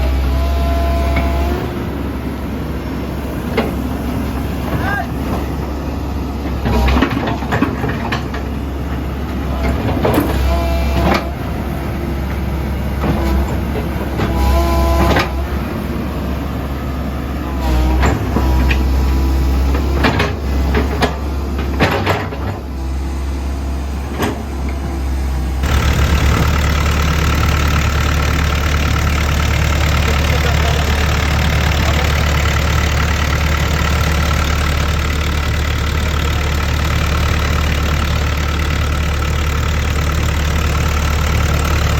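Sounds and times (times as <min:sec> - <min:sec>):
excavator diesel engine running: 0:00.0 - 0:41.9
clanks and knocks: 0:06.6 - 0:11.3, 0:19.7 - 0:22.7.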